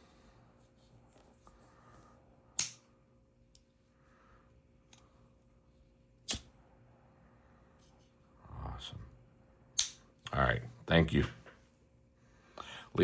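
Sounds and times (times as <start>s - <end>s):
lighter clicks: 2.6s - 2.8s.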